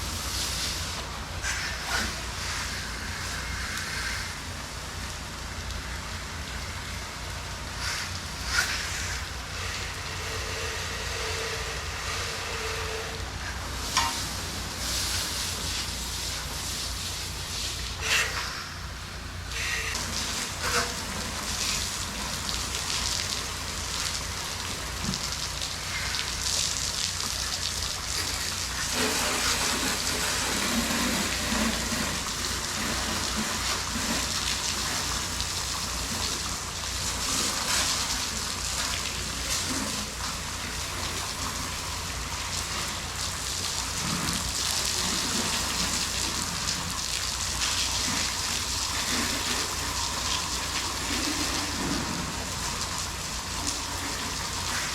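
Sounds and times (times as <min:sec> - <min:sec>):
steady low hum: 0:00.0 - 0:54.9
pressure washer spray hissing: 0:19.5 - 0:27.2.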